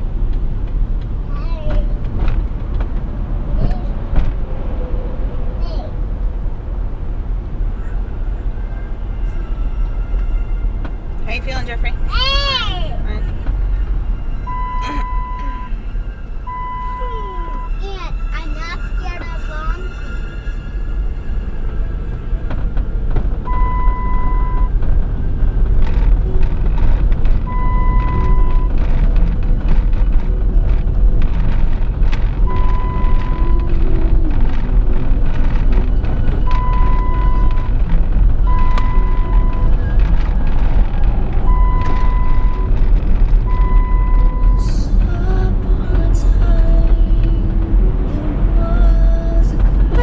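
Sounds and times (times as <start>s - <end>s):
car cabin road rumble: 0.0s - 50.0s
high electronic beeps: 14.3s - 21.4s.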